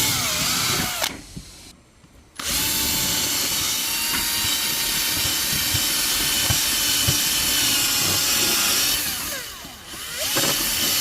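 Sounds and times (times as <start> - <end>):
power tool working wood: 2.4 - 11.0.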